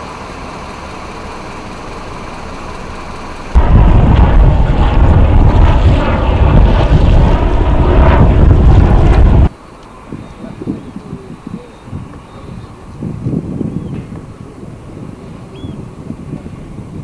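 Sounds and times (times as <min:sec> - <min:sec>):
fast boat engine rumble: 0:00.0 - 0:17.0
wind buffeting microphone: 0:00.2 - 0:17.0.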